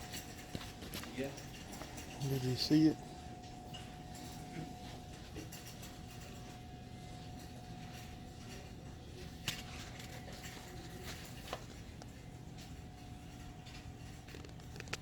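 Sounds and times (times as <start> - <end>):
ventilation hum: 0.0 - 15.0
faint clicks and knocks: 3.4 - 15.0.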